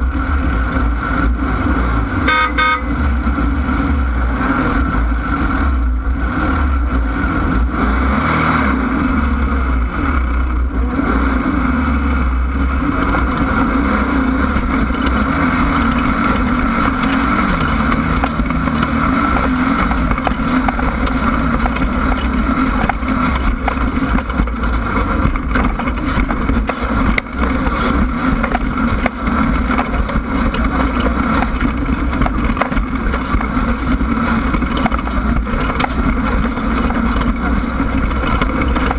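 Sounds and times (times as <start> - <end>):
race car engine under load: 0.0 - 38.9
knocks and rattles: 11.8 - 38.9.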